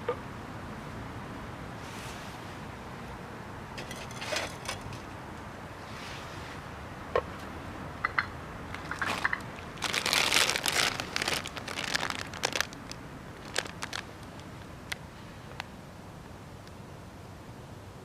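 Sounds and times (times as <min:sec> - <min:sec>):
crinkling and rustling: 0:03.8 - 0:05.1, 0:08.7 - 0:15.0.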